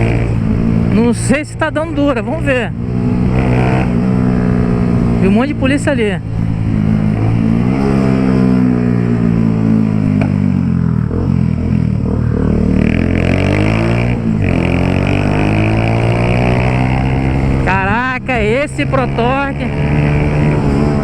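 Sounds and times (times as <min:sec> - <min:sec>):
motorcycle engine accelerating: 0:00.0 - 0:21.0.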